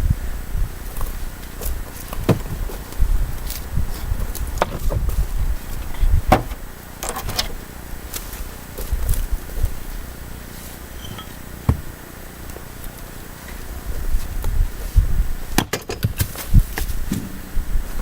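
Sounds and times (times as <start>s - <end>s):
wood knocking and cracking: 11.7s - 11.9s
low rumble: 16.6s - 18.0s.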